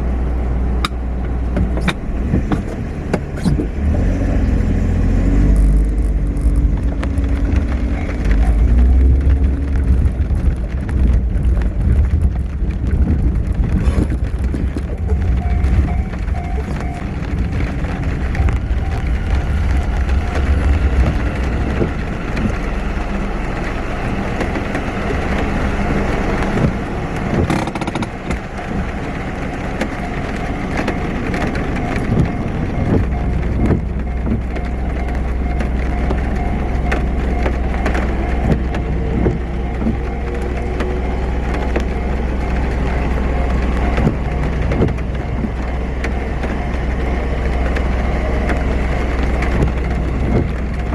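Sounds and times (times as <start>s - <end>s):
low engine rumble: 0.0s - 50.9s
passing vehicles: 0.0s - 50.9s.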